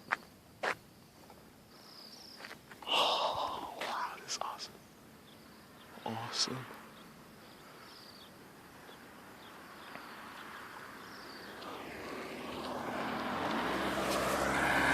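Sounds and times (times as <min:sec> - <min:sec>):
birds chirping: 0:00.0 - 0:14.9
outdoor hiss: 0:00.0 - 0:14.9
passing vehicle rumble: 0:08.2 - 0:14.9.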